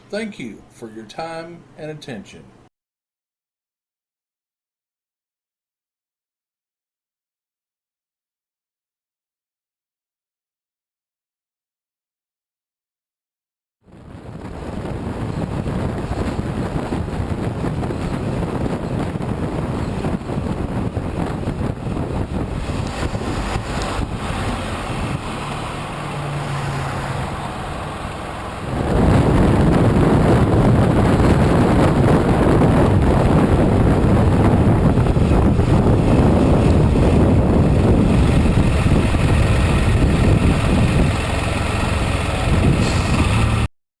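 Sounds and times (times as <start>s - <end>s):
wind buffeting microphone: 13.9s - 43.7s.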